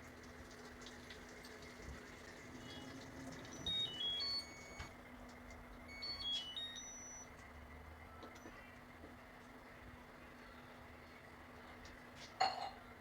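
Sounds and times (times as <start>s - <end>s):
electronic beeper tones: 3.5s - 4.9s, 5.9s - 7.3s.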